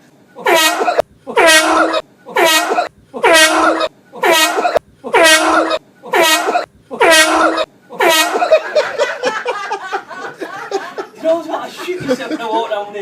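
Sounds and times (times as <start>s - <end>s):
air horn blasts: 0.5s - 8.6s.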